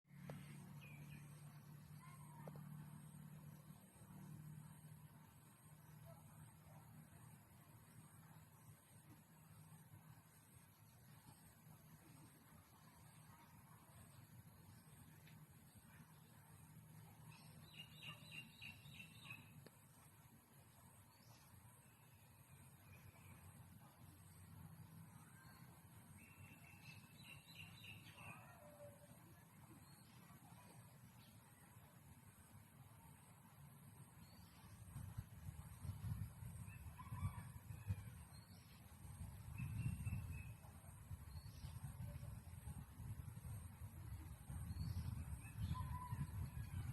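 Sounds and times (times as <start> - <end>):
bird chirping: 0.2 - 7.4, 10.4 - 19.7, 21.0 - 31.6, 38.2 - 42.8
steady low rumble: 29.1 - 46.9.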